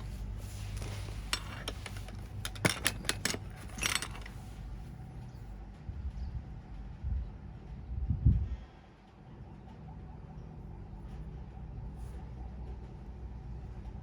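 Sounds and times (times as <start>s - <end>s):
metal tools clinking: 0.0s - 4.7s
low steady hum: 0.0s - 14.0s.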